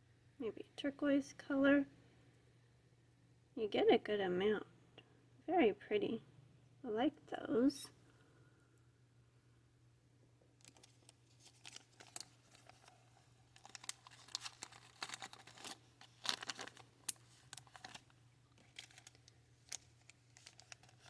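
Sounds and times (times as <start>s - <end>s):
bag of beads crinkling: 10.6s - 21.0s.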